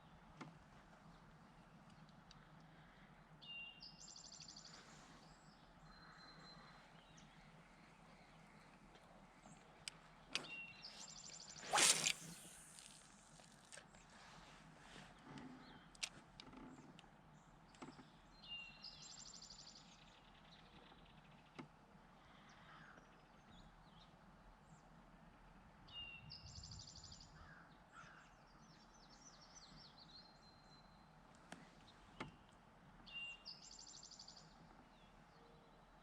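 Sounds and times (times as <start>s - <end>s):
songbird singing: 0.0s - 14.0s, 16.7s - 24.2s, 25.9s - 36.0s
background hiss: 10.8s - 15.0s.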